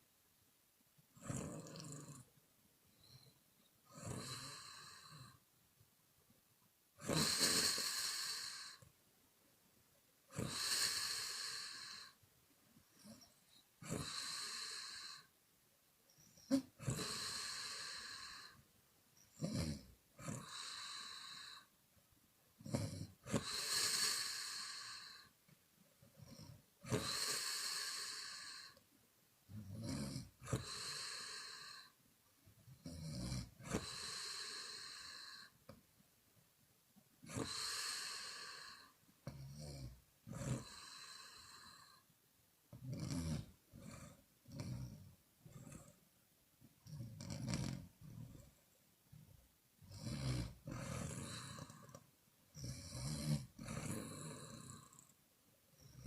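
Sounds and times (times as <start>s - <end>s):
woman snoring: 1.2s - 2.3s, 3.9s - 5.4s, 7.0s - 8.9s, 10.3s - 12.2s, 13.8s - 15.3s, 16.4s - 18.6s, 19.4s - 21.7s, 22.6s - 25.3s, 26.2s - 28.8s, 29.5s - 32.0s, 32.8s - 35.6s, 37.2s - 42.0s, 42.8s - 45.9s, 46.9s - 48.4s, 49.9s - 52.0s, 52.6s - 55.1s.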